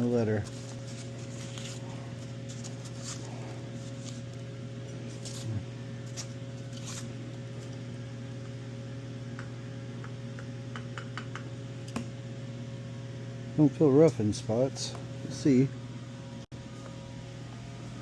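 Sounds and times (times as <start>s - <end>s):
low electrical hum: 0.0s - 18.0s
parcel and paper rustling: 0.3s - 7.8s.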